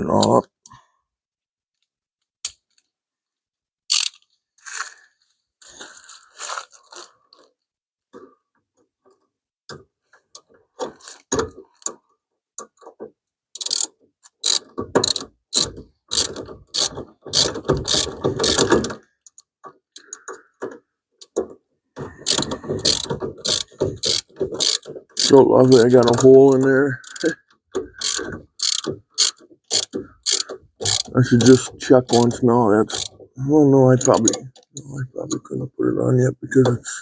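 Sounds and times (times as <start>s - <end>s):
ratchet wrench clicking: 3.9s - 4.9s, 13.6s - 19.4s, 22.2s - 26.3s, 27.0s - 27.4s, 28.0s - 32.2s, 32.9s - 33.1s.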